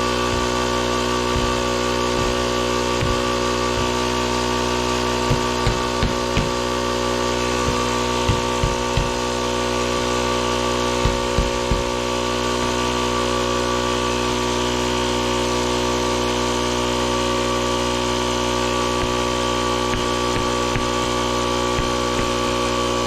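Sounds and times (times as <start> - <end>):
air compressor running: 0.0 - 23.0
low thumps: 1.2 - 4.1, 5.2 - 6.7, 7.5 - 9.2, 11.0 - 12.0.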